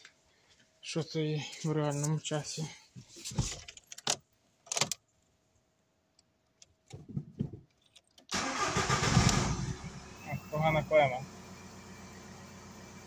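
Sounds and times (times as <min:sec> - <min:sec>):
diesel engine cranking and starting: 0:08.3 - 0:13.0.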